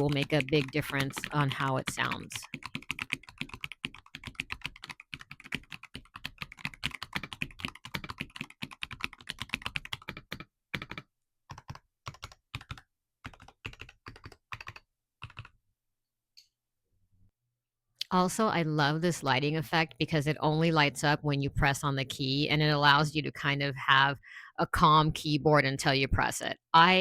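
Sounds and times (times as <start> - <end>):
mechanical keyboard typing: 0.0 - 15.5.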